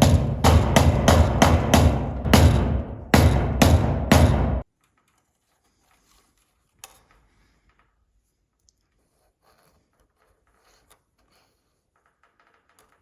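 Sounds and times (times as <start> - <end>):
music with percussive beat and bass: 0.0 - 4.6.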